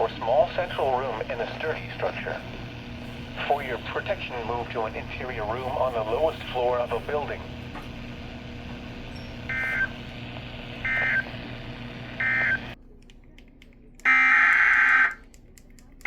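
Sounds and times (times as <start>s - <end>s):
buzzy digital data bursts: 0.0s - 12.8s
steady hum: 0.0s - 16.0s.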